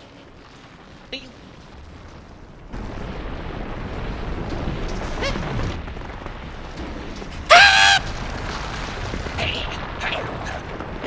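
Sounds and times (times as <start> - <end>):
falling pitched squeal: 7.5 - 8.1
short honking vocal cry: 7.5 - 8.1.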